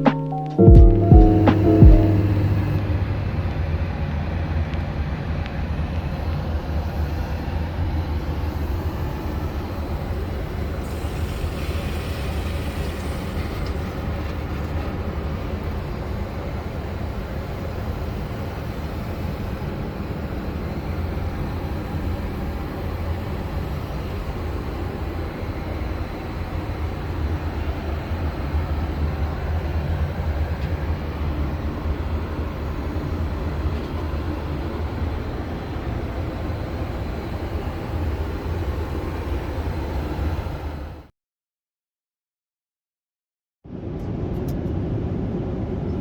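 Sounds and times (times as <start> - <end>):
jet engine cabin drone: 0.0 - 41.1, 43.7 - 46.0
faint hiss: 7.8 - 29.6.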